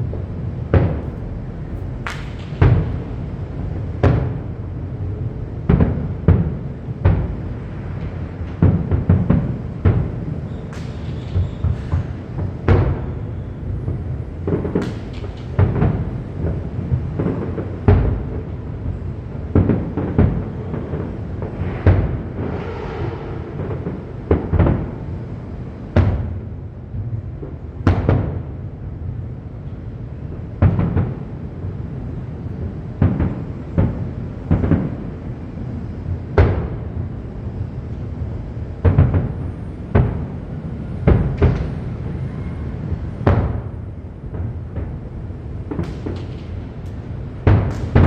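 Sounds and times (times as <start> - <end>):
fireworks crackling: 0.0 - 5.0, 7.3 - 18.6, 30.0 - 48.0
fireworks booming: 0.0 - 28.6, 29.8 - 48.0
rumble: 0.0 - 48.0.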